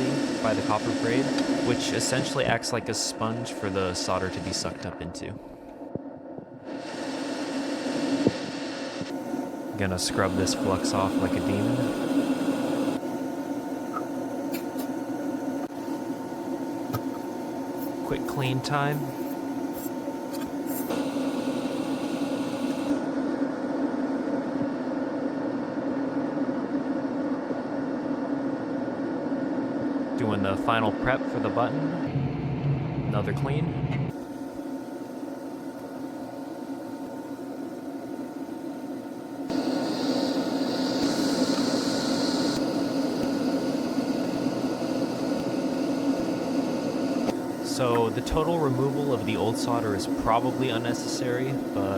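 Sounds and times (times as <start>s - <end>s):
small motor whirring hum: 5.6s - 25.4s, 33.9s - 51.9s.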